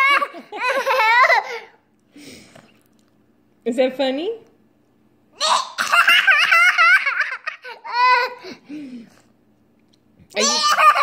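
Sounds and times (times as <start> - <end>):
young child laughing: 0.0 - 1.8, 5.4 - 8.6, 10.4 - 11.0.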